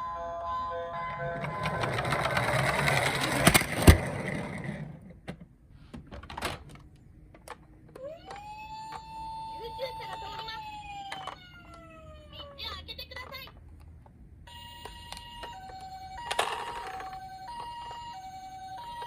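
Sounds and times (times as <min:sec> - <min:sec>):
toy car rolling with whirring rattle: 0:01.0 - 0:05.2, 0:07.4 - 0:13.6, 0:14.5 - 0:19.0
toy electronic siren wailing: 0:08.0 - 0:12.9, 0:14.5 - 0:19.0.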